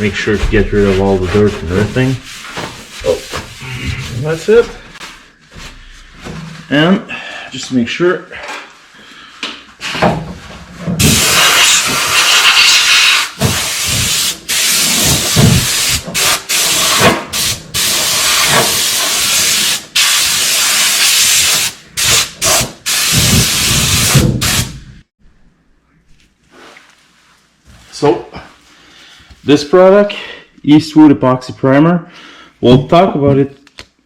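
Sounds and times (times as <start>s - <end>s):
air blow gun hissing: 11.0s - 25.0s.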